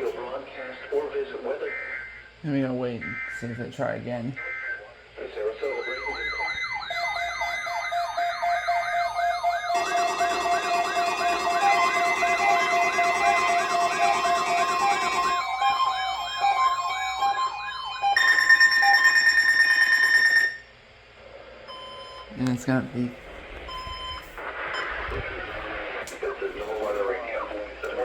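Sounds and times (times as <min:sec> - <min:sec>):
steady alarm tone: 0:01.7 - 0:20.8
sweeping siren tones: 0:05.5 - 0:20.7
steady high beep tone: 0:05.6 - 0:20.7, 0:23.7 - 0:25.0.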